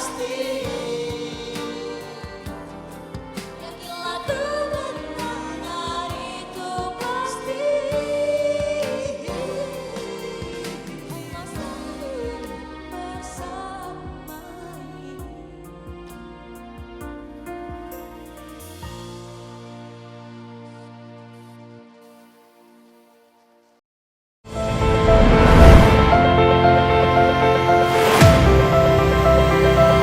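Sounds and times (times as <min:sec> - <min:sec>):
vocal group singing pop ballad: 0:00.0 - 0:16.4
backing track with steady beat: 0:00.0 - 0:19.8.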